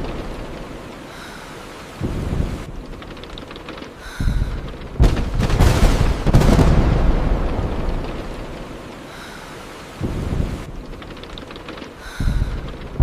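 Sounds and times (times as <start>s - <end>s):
steady rain: 0.0s - 13.0s
thunder rumbling and cracking: 2.0s - 9.0s, 10.0s - 13.0s.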